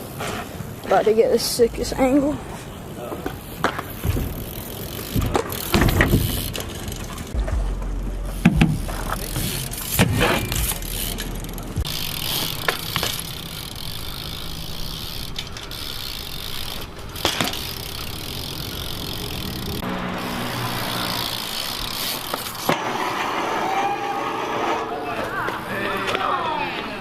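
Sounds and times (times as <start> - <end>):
bike tyres rolling: 0.0 - 27.0
bike knocking and rattling: 2.2 - 22.9.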